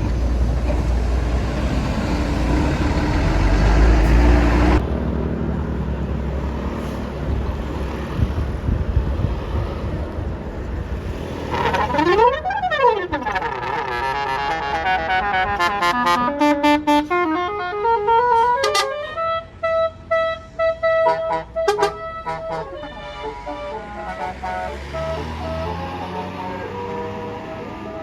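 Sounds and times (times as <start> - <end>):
heavy bus engine passing: 0.0 - 28.0
traffic hum: 0.0 - 28.0
bus musical horn: 11.4 - 28.0.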